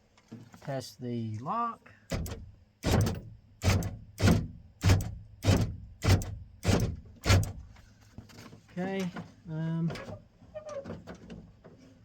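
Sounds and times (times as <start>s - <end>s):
car door lock clunks: 2.1s - 7.6s.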